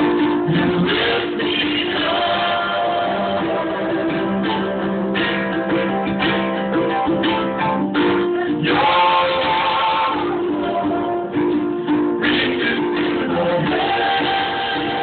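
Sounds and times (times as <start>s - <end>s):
strummed guitar: 0.0s - 15.0s.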